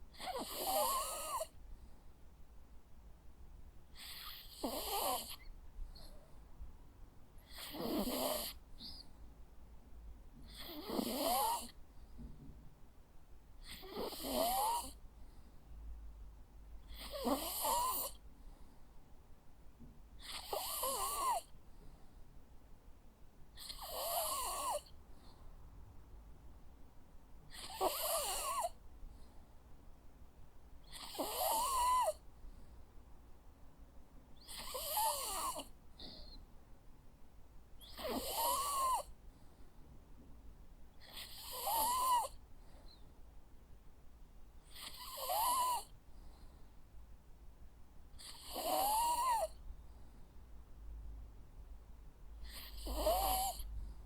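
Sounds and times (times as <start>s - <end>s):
dog snoring with squeaky whistle: 0.1s - 1.5s, 4.0s - 6.2s, 7.4s - 9.1s, 10.5s - 11.7s, 13.6s - 15.0s, 16.9s - 18.2s, 20.2s - 21.5s, 23.6s - 24.9s, 27.5s - 28.8s, 30.8s - 32.2s, 34.4s - 36.4s, 37.8s - 39.1s, 41.0s - 42.4s, 44.6s - 45.9s, 48.2s - 49.6s, 52.4s - 53.6s.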